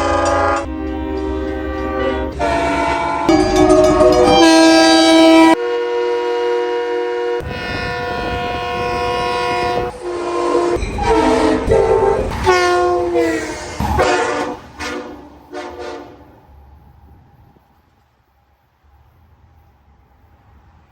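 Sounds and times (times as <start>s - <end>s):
train horn blasts: 0.0s - 16.4s
train rumble: 0.0s - 20.9s.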